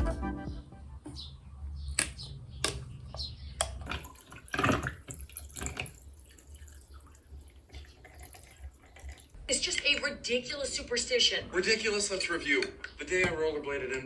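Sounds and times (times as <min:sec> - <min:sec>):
sharp clicks and knocks: 0:01.9 - 0:03.9.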